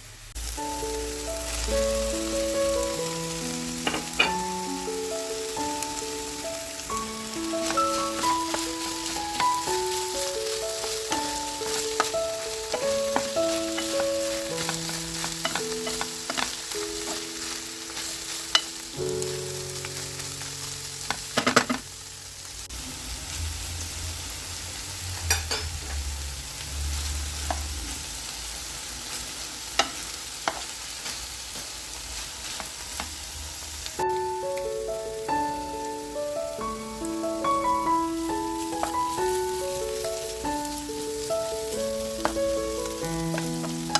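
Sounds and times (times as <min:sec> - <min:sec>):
food sizzling in a pan: 0:00.0 - 0:43.9
soft background music: 0:00.5 - 0:22.6, 0:34.0 - 0:43.9.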